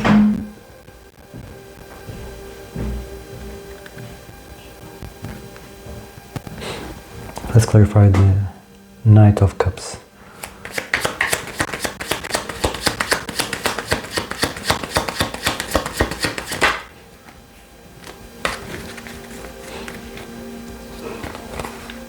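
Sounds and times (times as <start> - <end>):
sharp card sound: 10.4 - 16.9, 18.0 - 20.1
cards being shuffled: 10.4 - 17.4, 18.0 - 22.0.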